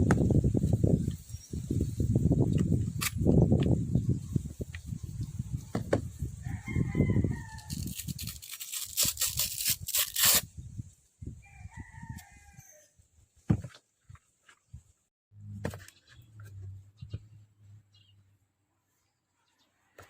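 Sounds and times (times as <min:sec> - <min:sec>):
rooster crowing: 0:06.4 - 0:07.8, 0:11.4 - 0:12.9.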